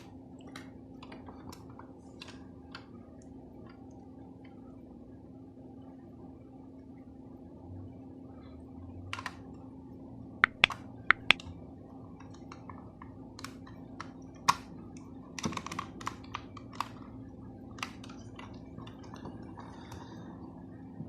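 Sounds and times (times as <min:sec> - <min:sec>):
sharp clicks and taps: 0:10.4 - 0:11.4.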